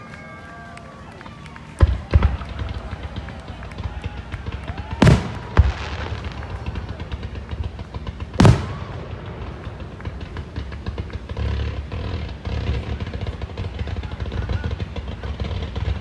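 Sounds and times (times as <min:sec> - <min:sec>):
fireworks crackling: 0:00.1 - 0:16.0
sharp firework bang: 0:01.8 - 0:12.1
firework shells booming: 0:01.8 - 0:16.0.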